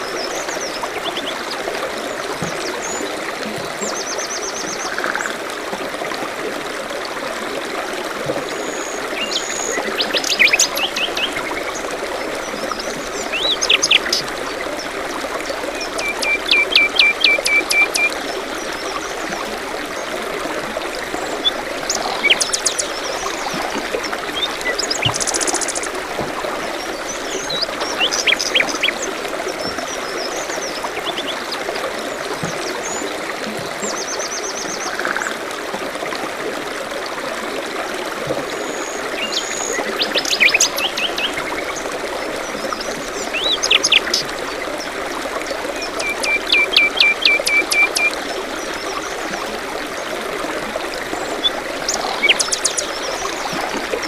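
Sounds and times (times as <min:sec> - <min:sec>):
stream trickling: 0:00.0 - 0:54.0
songbirds trilling and chirping: 0:15.5 - 0:19.2, 0:21.2 - 0:31.6, 0:38.8 - 0:44.9, 0:51.2 - 0:54.0.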